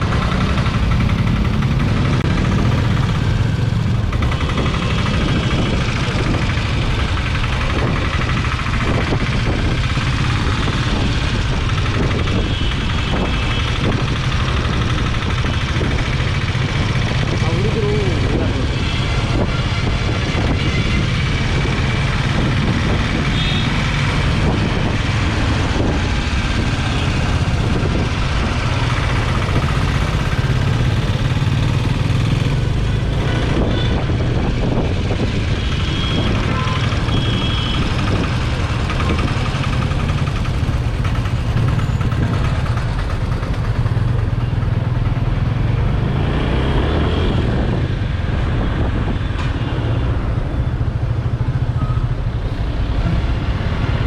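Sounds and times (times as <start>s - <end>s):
motorcycle engine drone: 0.0s - 54.0s
wind rush on microphone: 4.0s - 42.6s, 46.9s - 51.0s.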